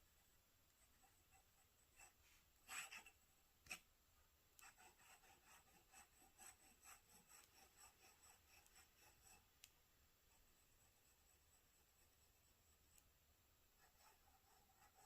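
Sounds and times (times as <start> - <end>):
pen scratching on paper: 0.8 - 3.9, 4.6 - 9.5, 10.3 - 13.1, 13.8 - 15.0.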